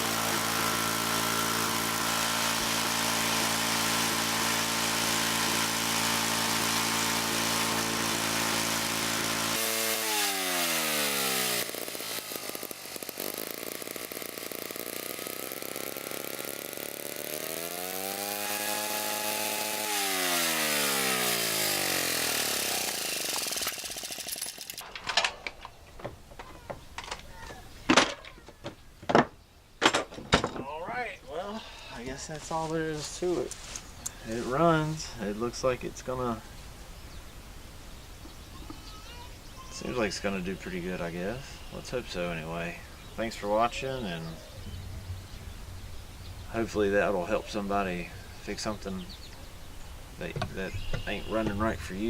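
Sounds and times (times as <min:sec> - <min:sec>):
small gasoline engine running: 0:00.0 - 0:24.8.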